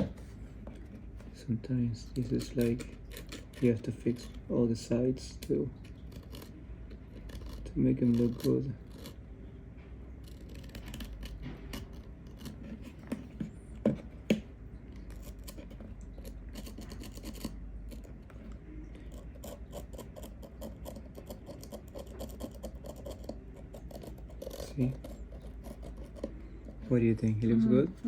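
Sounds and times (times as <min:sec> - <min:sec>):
small plastic clicks and scratching: 0:02.2 - 0:04.4, 0:05.4 - 0:09.2, 0:10.2 - 0:14.4, 0:15.0 - 0:26.9.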